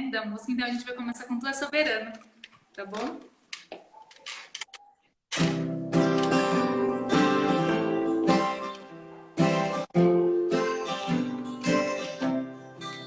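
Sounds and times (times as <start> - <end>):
acoustic guitar strumming chords: 5.4 - 13.0.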